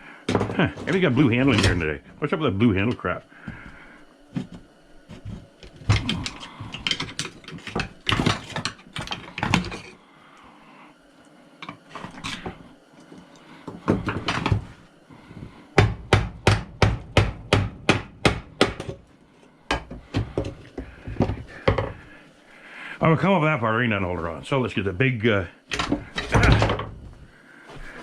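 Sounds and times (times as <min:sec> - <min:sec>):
hand tools clanking and knocking: 0:00.3 - 0:02.0, 0:04.4 - 0:10.0, 0:19.7 - 0:22.1, 0:25.7 - 0:27.0.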